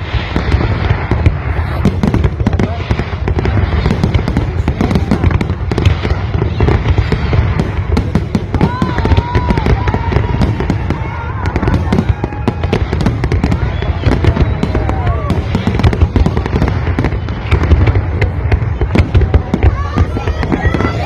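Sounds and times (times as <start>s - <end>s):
fireworks bangs and crackles: 0.0s - 21.0s.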